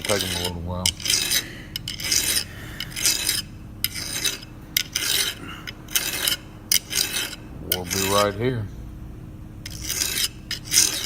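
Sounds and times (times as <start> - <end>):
hand file rasping on steel: 0.0 - 8.4, 9.6 - 11.0.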